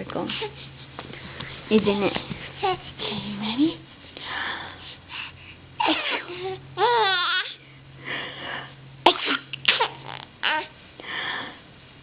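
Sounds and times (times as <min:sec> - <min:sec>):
baby whimpering and crying: 0:05.8 - 0:07.6, 0:09.8 - 0:10.8.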